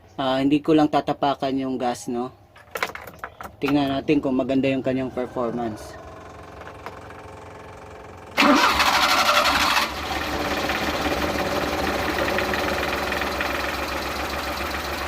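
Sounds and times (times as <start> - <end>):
engine idling: 5.1 - 15.0
engine cranking and starting: 6.0 - 15.0.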